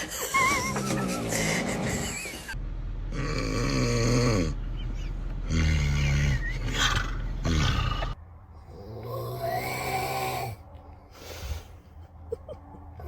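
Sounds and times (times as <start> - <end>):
person snoring: 8.7 - 10.6
noisy breath: 10.9 - 12.0.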